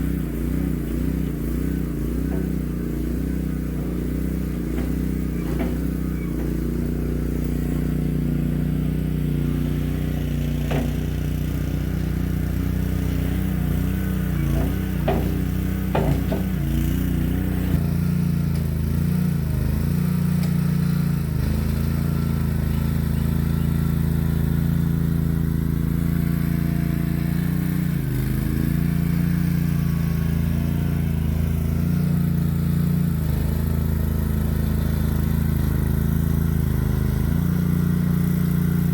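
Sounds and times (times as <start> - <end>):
mini skid steer engine running: 0.0 - 38.9
metal clanks: 13.3 - 17.8.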